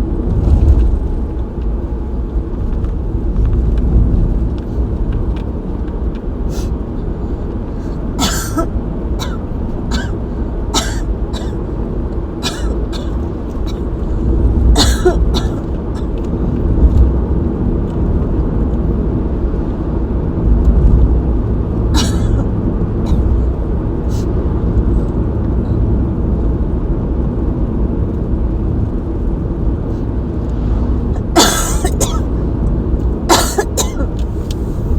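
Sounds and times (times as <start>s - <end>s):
steady low rumble: 0.0s - 34.9s
person coughing: 8.2s - 10.2s, 10.8s - 11.6s, 12.4s - 13.8s, 14.8s - 15.7s, 22.0s - 22.5s, 31.3s - 32.2s, 33.3s - 34.1s.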